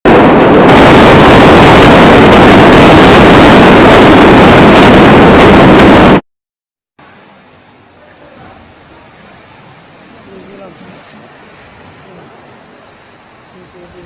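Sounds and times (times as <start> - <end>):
loud distorted rushing noise: 0.1 - 6.2.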